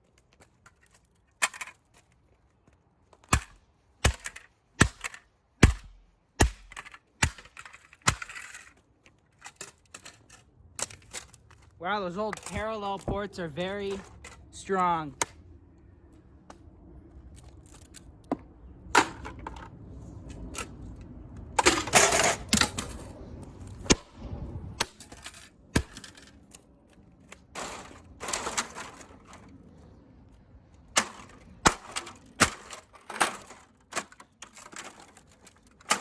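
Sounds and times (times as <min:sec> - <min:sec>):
plastic and metal parts rattling: 0:00.0 - 0:05.4, 0:06.6 - 0:14.6, 0:24.8 - 0:29.8, 0:30.8 - 0:36.0
scraping clatter: 0:24.8 - 0:29.7.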